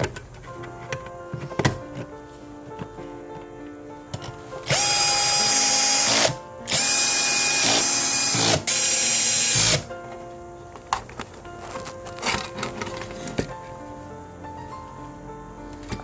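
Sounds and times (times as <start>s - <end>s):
background music: 0.0s - 16.0s
electric motor whining: 4.7s - 9.9s.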